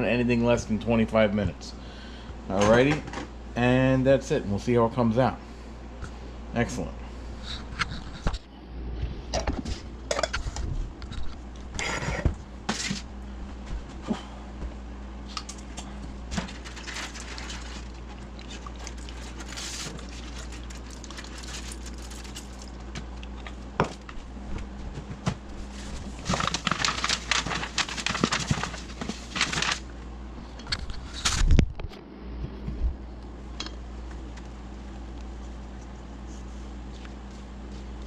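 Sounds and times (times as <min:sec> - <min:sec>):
steady low hum: 0:00.0 - 0:38.0
utensils and dishes clattering: 0:09.4 - 0:10.4
rustling and scraping: 0:15.2 - 0:23.6, 0:24.6 - 0:29.9.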